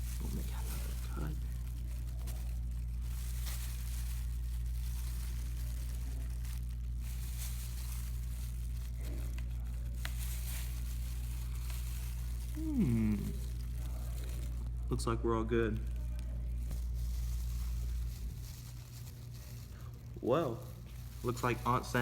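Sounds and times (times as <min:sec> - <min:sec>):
low electrical hum: 0:00.0 - 0:22.0
person speaking: 0:12.5 - 0:16.5.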